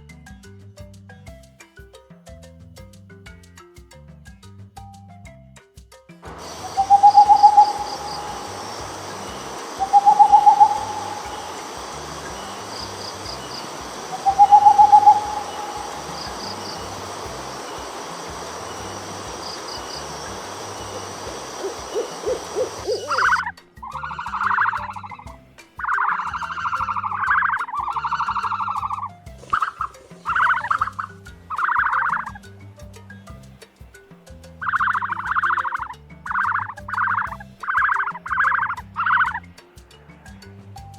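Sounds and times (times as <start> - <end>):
steady background hiss: 0.8 - 40.9
low pulses: 6.2 - 32.4
owl hooting: 6.3 - 32.4, 34.6 - 39.5
pulsed animal call: 6.3 - 32.5, 34.6 - 39.6.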